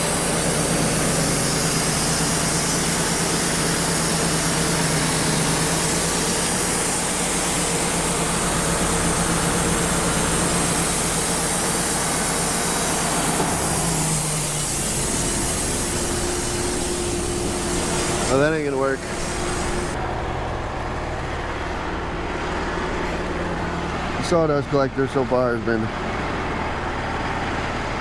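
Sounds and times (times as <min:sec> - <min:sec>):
dust blower: 0:00.0 - 0:20.0
sawmill engine running: 0:00.0 - 0:28.0.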